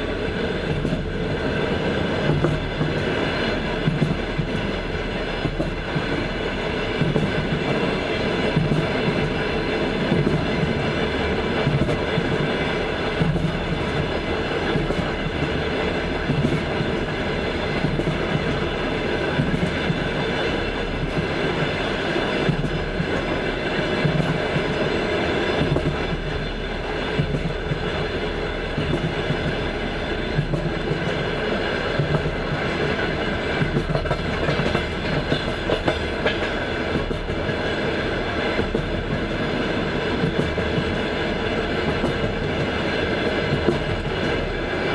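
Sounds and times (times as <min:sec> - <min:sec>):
train carriage rumble: 0:00.0 - 0:44.9
train wheels clickety-clack: 0:00.0 - 0:44.9.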